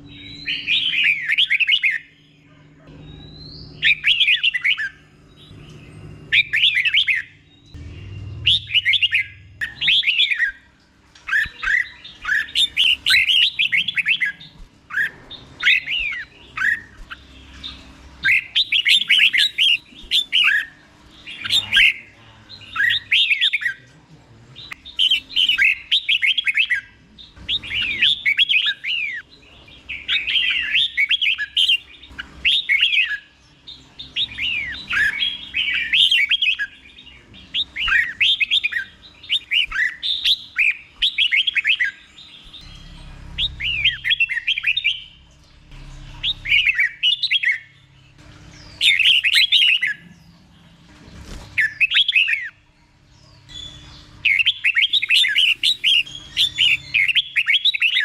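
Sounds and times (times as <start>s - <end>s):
bulbul whistled song: 0.0s - 10.7s, 11.3s - 22.0s, 53.5s - 58.0s.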